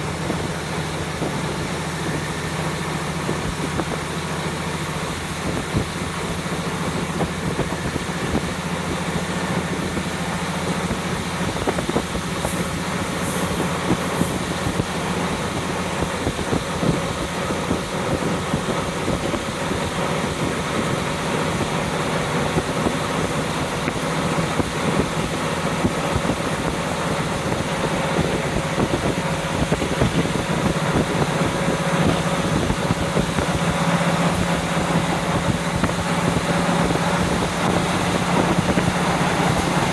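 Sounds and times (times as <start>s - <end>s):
diesel engine drone: 0.0s - 39.9s
wind rushing through window: 0.0s - 39.9s
brief high hisses: 12.4s - 14.8s.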